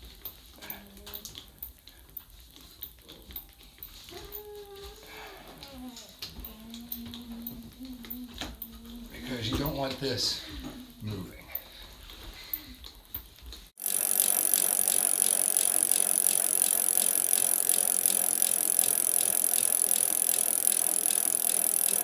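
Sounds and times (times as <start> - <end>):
ratchet wrench clicking: 13.8 - 22.0.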